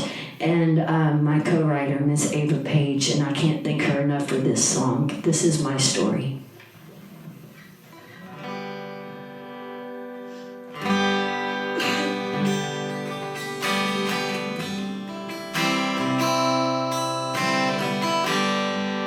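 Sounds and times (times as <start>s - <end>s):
acoustic guitar chords: 6.8s - 19.0s.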